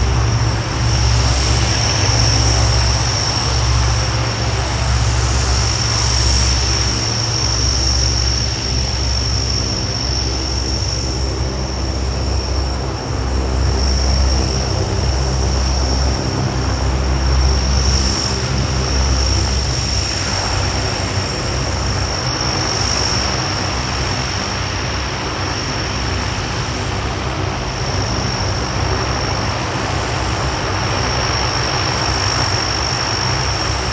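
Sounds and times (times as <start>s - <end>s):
broad rushing noise: 0.0s - 7.1s
turboprop engines droning: 0.0s - 33.9s.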